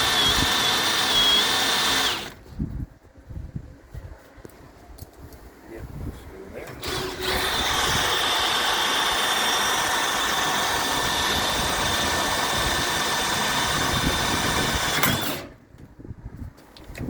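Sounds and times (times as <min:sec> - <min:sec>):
power tool motor whining: 0:00.0 - 0:02.4, 0:06.7 - 0:15.6.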